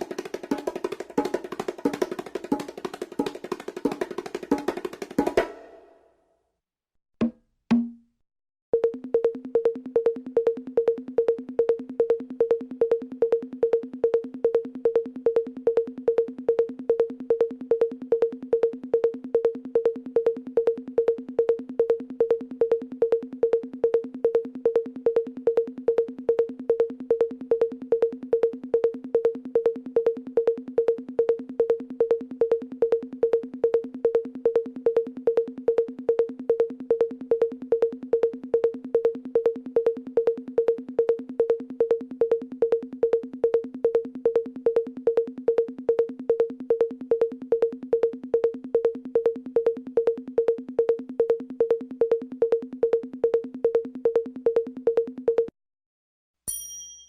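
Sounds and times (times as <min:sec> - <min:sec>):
looped pitched percussion beat: 0:00.0 - 0:06.0.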